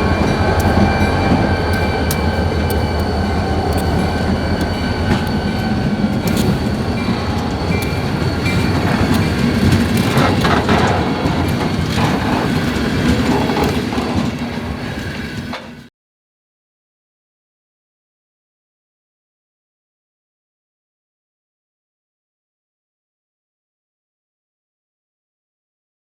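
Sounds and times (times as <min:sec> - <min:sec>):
freight train rumbling: 0:00.0 - 0:15.9
wheels clicking over rail joints: 0:00.0 - 0:15.9.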